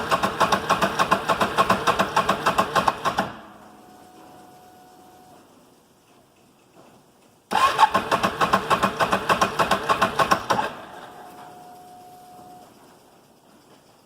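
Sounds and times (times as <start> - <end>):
engine cranking on electric starter: 0.0 - 5.5, 7.5 - 12.8.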